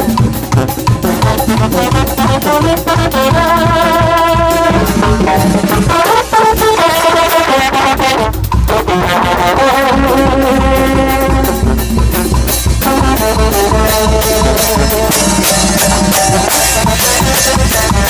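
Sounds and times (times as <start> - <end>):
drums: 0.0 - 18.0
trumpets and trombones: 0.0 - 18.0.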